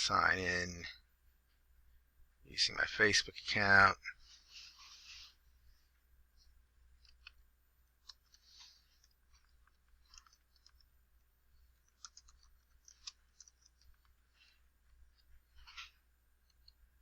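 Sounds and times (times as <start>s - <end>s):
faint computer clicks: 11.8s - 14.5s.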